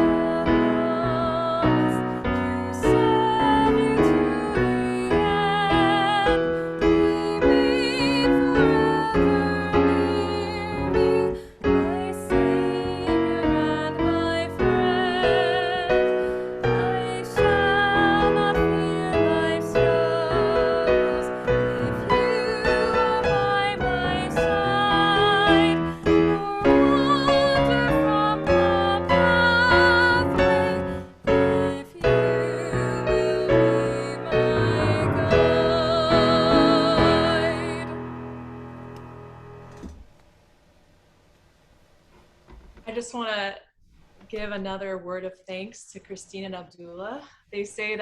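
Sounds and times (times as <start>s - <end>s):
person singing with vibrato: 0.0s - 38.3s
piano accompaniment: 0.0s - 40.0s.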